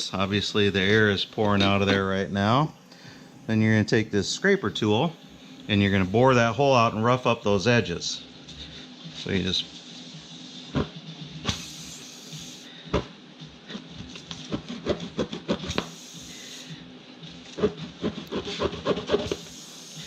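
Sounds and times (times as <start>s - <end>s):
air hissing from tire: 11.4s - 12.7s, 15.6s - 16.9s, 19.2s - 20.0s
tool rasping in tire rubber: 17.6s - 20.0s.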